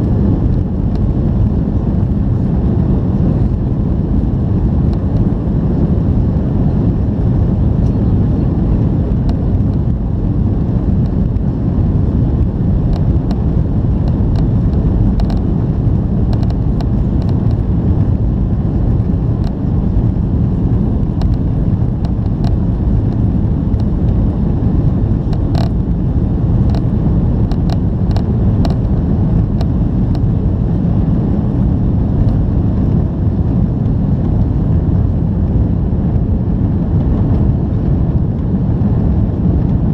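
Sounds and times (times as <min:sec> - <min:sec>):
jet engines rumbling: 0:00.0 - 0:39.9.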